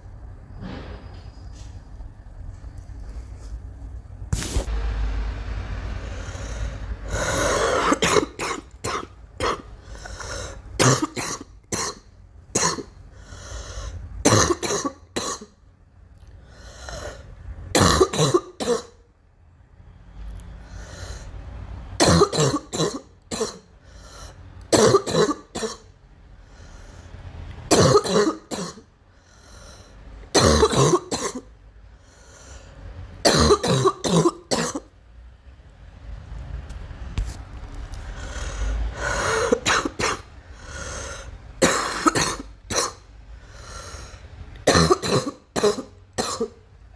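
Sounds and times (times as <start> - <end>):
girl coughing: 7.1 - 9.7, 10.8 - 13.0, 14.2 - 15.5, 17.7 - 19.0, 22.0 - 23.7, 24.7 - 25.9, 27.7 - 28.9, 30.3 - 31.5, 33.2 - 34.9, 39.3 - 40.3, 41.6 - 43.0, 44.7 - 46.6.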